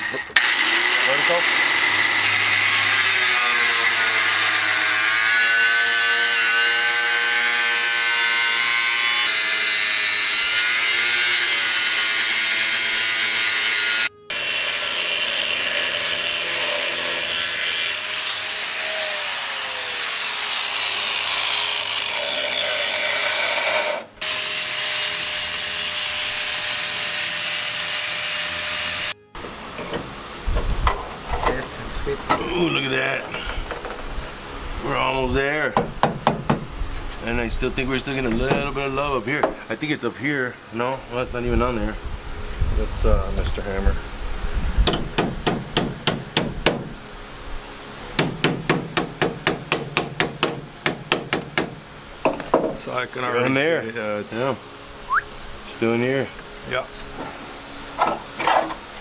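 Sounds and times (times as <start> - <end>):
angle grinder cutting metal: 0.0 - 29.5.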